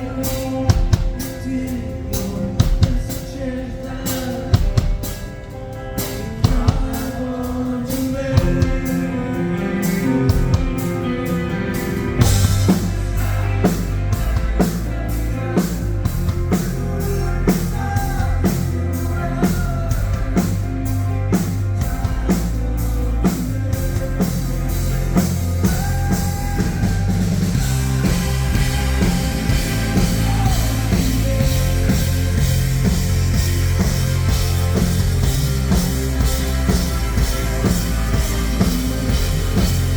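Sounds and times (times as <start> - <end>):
live rock band playing: 0.0 - 39.9
thick bass: 8.3 - 39.9
drum kit beat: 9.8 - 39.9.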